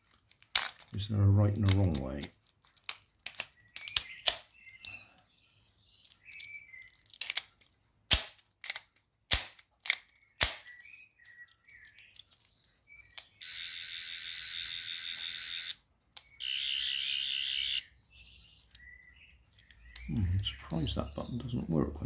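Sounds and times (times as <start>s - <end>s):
plastic clicks: 0.0s - 1.0s, 1.6s - 5.0s, 6.0s - 13.4s, 19.5s - 20.9s
toy electronic warbling whirr: 13.4s - 15.8s, 16.4s - 17.9s.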